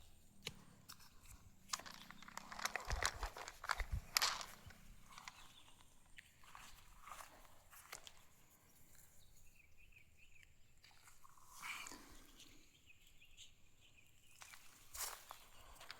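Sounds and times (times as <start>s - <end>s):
soft rustles: 0.0s - 9.2s, 14.2s - 15.9s.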